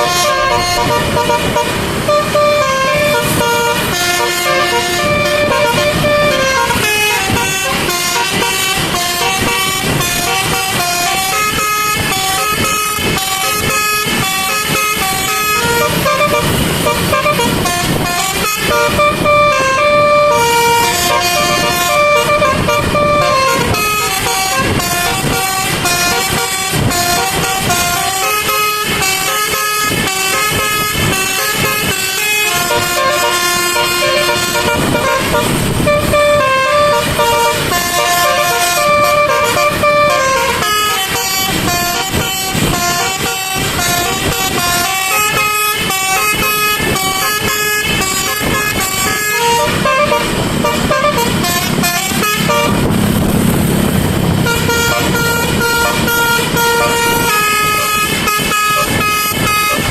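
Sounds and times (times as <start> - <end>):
musical air horns playing tune: 0.0 - 59.9
vehicle noise: 0.0 - 59.9.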